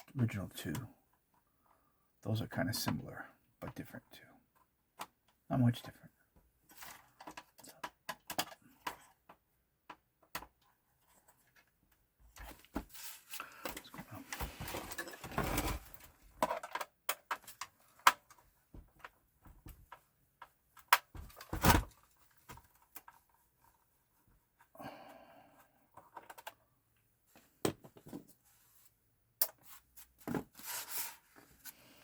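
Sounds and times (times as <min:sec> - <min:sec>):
rustling and scraping: 0:12.3 - 0:16.7, 0:29.6 - 0:32.0.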